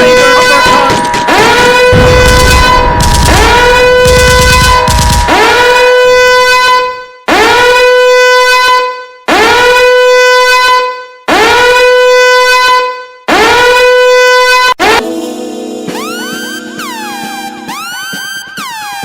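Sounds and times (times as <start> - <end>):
loud swooping horn blasts: 0.0 - 10.0
low droning tone: 0.7 - 7.0.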